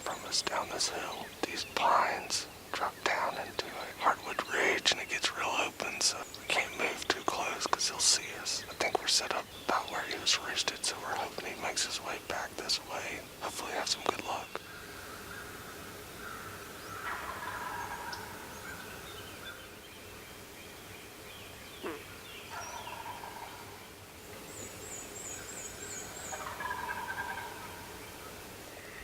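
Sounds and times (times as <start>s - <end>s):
distant turkey gobbling: 16.2s - 18.6s, 21.8s - 23.8s, 26.2s - 28.0s.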